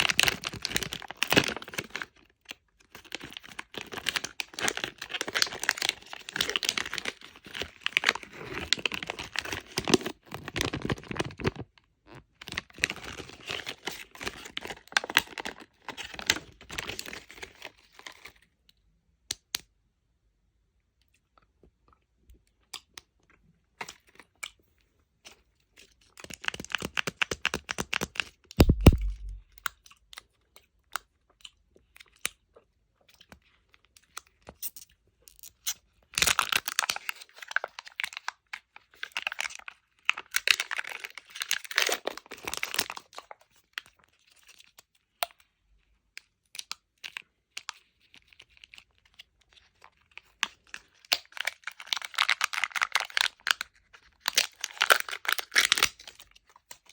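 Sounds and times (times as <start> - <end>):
wrappers crinkling and tearing: 0.0 - 2.1, 3.1 - 11.6, 12.4 - 18.3, 26.2 - 29.4, 36.2 - 43.4, 49.9 - 56.9
dull thud: 28.6 - 29.4.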